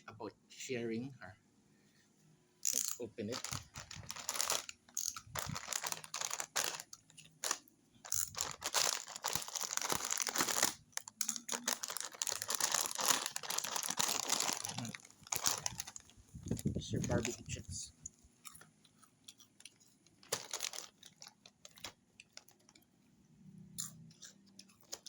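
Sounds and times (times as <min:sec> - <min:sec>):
plastic snack bag crinkling: 0:02.7 - 0:17.6, 0:19.6 - 0:22.9, 0:24.7 - 0:25.0.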